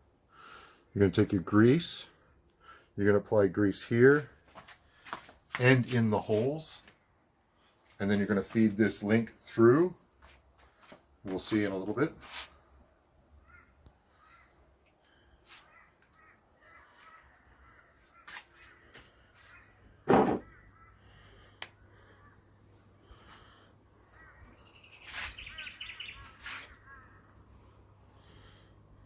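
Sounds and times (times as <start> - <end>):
birds calling: 13.3 - 29.0
heavy thump: 20.1 - 20.5.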